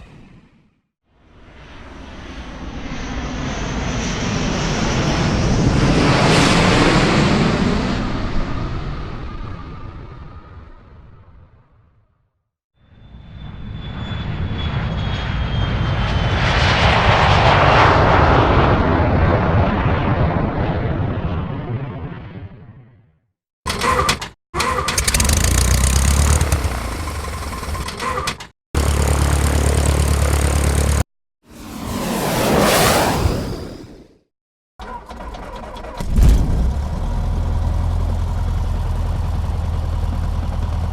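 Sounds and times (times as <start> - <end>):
airplane flying overhead: 1.1 - 11.5, 12.8 - 23.0, 28.8 - 34.1
high engine whine: 23.7 - 32.3.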